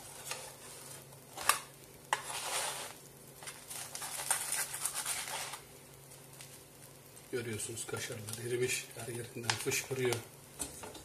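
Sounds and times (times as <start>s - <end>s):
scraping or rustling: 0.0s - 5.7s.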